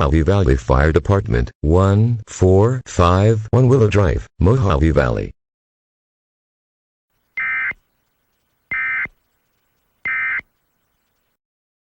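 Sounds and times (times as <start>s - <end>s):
buzzy two-tone digital data bursts: 8.7s - 9.1s, 10.0s - 10.5s.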